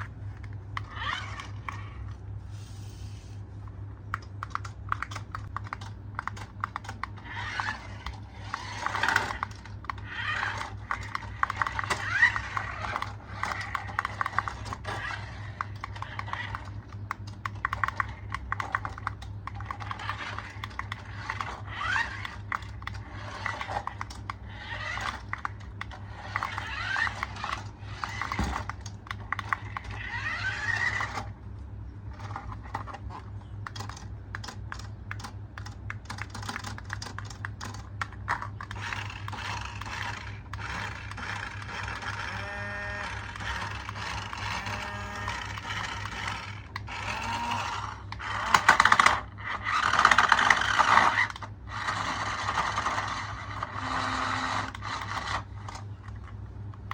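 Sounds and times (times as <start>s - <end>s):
steady low hum: 0.0s - 56.9s
rapid clicking and rattling: 32.2s - 42.3s, 43.0s - 56.9s.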